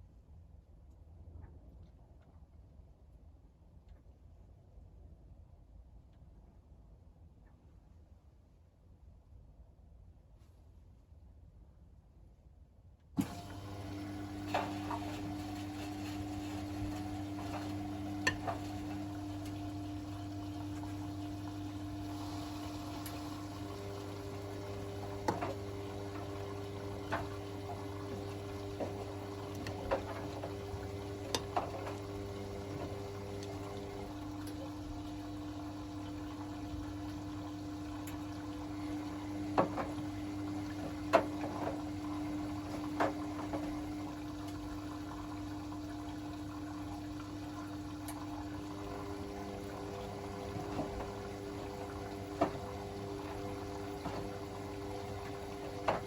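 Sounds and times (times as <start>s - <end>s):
washing machine taking in water: 13.2s - 56.0s.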